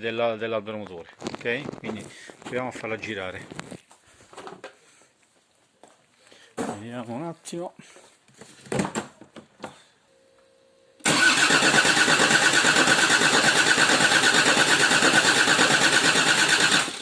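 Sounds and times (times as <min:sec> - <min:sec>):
starter motor cranking engine: 0:11.0 - 0:17.0.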